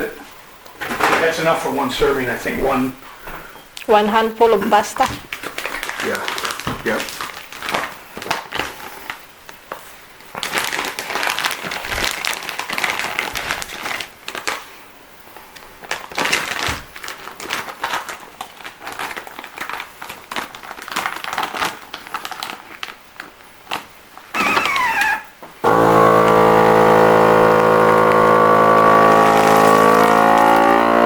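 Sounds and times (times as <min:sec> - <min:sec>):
plastic packaging crinkling: 0:05.3 - 0:25.3.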